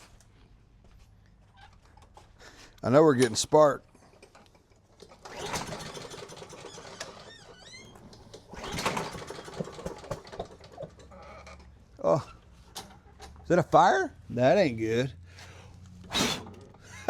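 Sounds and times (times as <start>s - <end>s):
lawn mower engine cranking: 1.6s - 13.6s, 15.8s - 17.0s
recoil starter pull: 4.0s - 11.8s, 16.0s - 17.0s.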